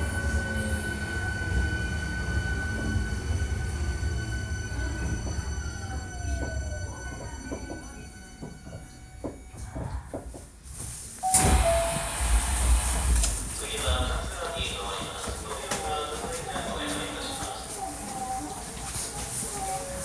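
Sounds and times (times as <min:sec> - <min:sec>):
train inverter whining: 0:00.0 - 0:09.2, 0:11.3 - 0:17.6
train rumble: 0:00.0 - 0:20.0.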